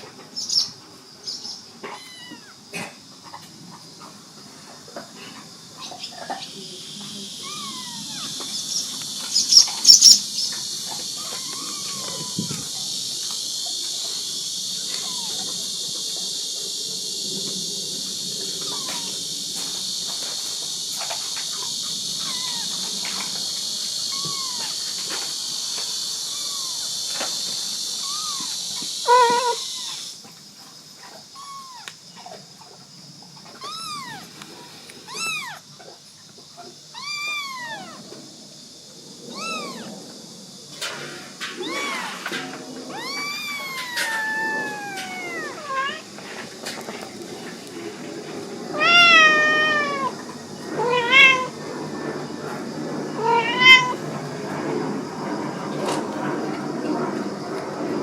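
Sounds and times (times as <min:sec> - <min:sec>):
insect chorus: 0:00.0 - 0:58.0
kitten meowing: 0:01.8 - 0:02.6, 0:07.4 - 0:08.6, 0:11.1 - 0:12.8, 0:14.9 - 0:15.7, 0:18.6 - 0:19.2, 0:22.2 - 0:23.4, 0:24.0 - 0:25.0, 0:26.3 - 0:27.2, 0:28.0 - 0:30.1, 0:31.4 - 0:32.0, 0:33.5 - 0:34.4, 0:35.0 - 0:35.7, 0:36.9 - 0:38.0, 0:39.3 - 0:39.9, 0:41.6 - 0:46.0, 0:48.8 - 0:50.2, 0:50.8 - 0:51.5, 0:53.2 - 0:54.0.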